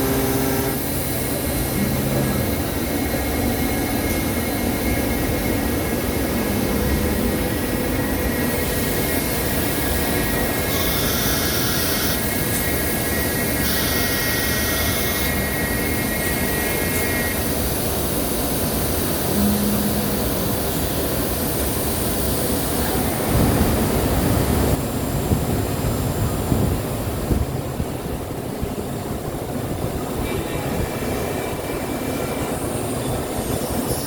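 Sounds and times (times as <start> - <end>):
machine spindle rushing noise: 0.0 - 18.0
high whine: 0.0 - 24.8.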